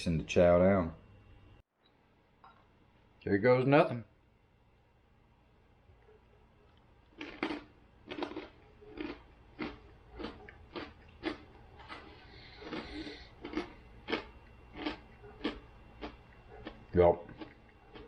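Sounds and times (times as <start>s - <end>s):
chewing crunchy chip: 7.1s - 18.0s.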